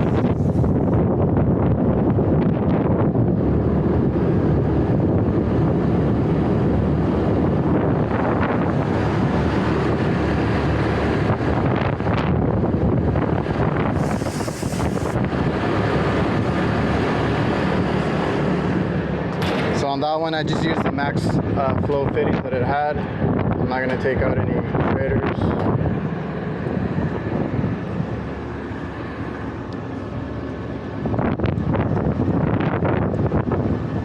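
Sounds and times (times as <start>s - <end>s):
wind buffeting microphone: 0.0s - 34.0s
short hiss: 13.9s - 15.2s.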